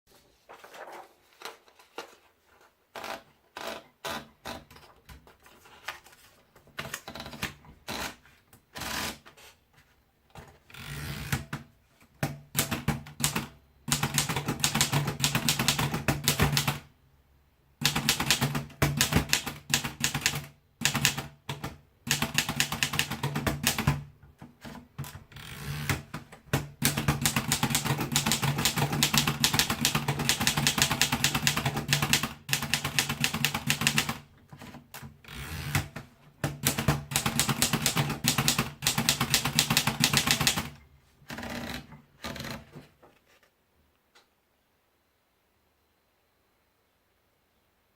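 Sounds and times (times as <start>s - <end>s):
manual typewriter typing: 12.2s - 16.9s, 17.8s - 42.7s.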